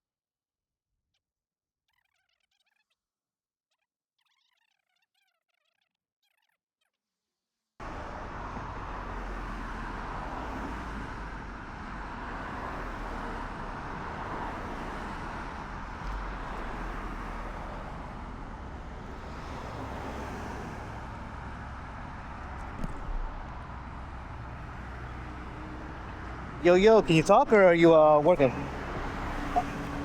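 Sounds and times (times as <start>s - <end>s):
road traffic rumble: 7.8s - 30.0s
vehicle passing: 7.8s - 30.0s.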